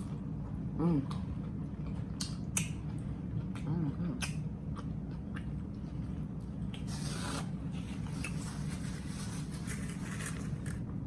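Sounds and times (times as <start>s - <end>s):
wet chewing and mouth sounds: 0.0s - 10.9s
low background hum: 0.0s - 11.0s.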